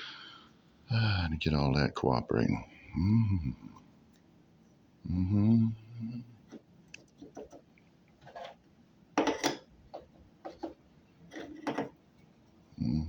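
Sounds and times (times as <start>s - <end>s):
short rustling scrapes: 8.2s - 8.6s.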